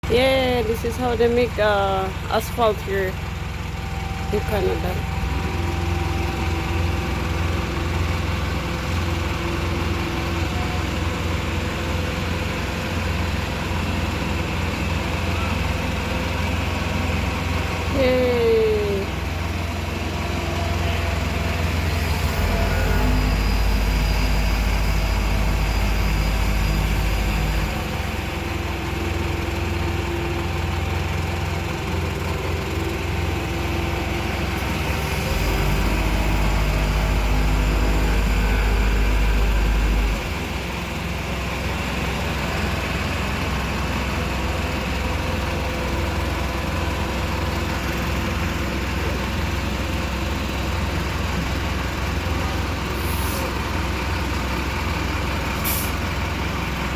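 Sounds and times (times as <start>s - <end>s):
diesel paving machinery running: 0.0s - 56.9s
short hiss: 53.0s - 53.5s.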